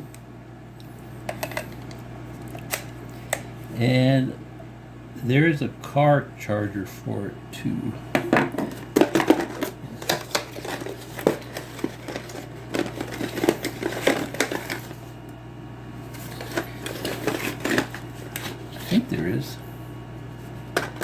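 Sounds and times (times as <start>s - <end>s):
steady low hum: 0.0s - 21.0s
packaging rustling: 8.5s - 15.2s, 16.1s - 19.0s.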